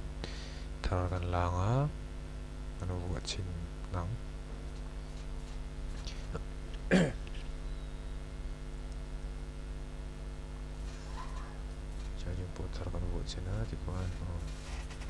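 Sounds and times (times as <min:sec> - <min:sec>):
low hum: 0:00.0 - 0:15.0
man clearing throat: 0:06.4 - 0:07.3.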